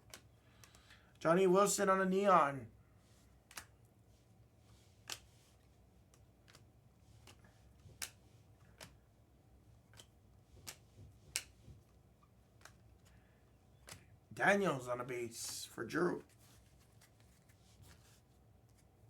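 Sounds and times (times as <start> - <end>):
sharp card clicks: 3.4 - 3.8
trading cards being flipped: 3.4 - 3.8, 4.9 - 9.0, 9.9 - 11.8, 12.5 - 13.2, 13.8 - 14.1, 16.2 - 18.9.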